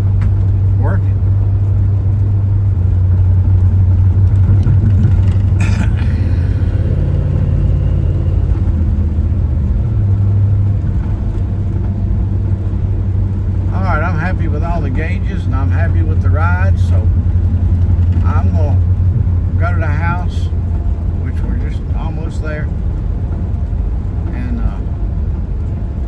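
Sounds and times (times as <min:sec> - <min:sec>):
vehicle road and engine rumble: 0:00.0 - 0:26.0
brief rattle: 0:04.0 - 0:09.1.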